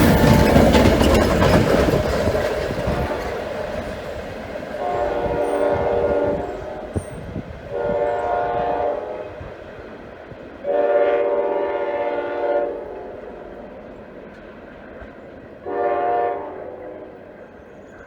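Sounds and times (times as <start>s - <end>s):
train rumbling: 0.0s - 18.0s
locomotive air horn: 4.8s - 9.6s, 10.6s - 13.2s, 15.6s - 17.0s.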